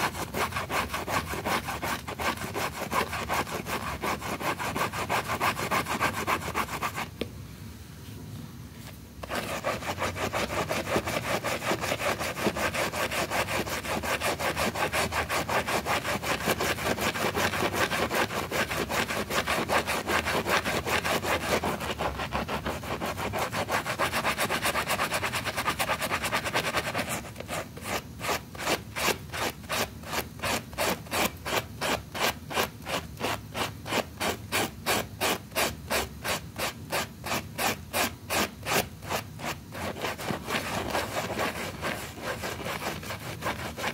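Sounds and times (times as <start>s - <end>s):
stiff brush scrubbing carpet: 0.0s - 7.1s, 9.2s - 43.9s.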